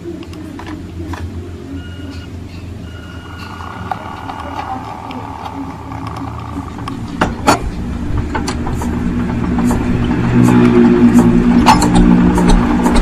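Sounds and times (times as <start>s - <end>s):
engine running: 2.6s - 13.0s.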